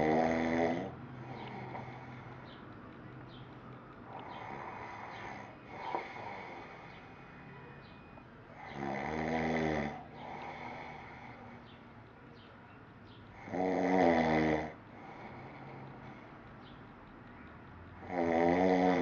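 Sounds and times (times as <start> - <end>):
man snoring: 0.0 - 2.4, 4.1 - 7.2, 8.6 - 11.6, 13.4 - 16.2, 18.0 - 19.0.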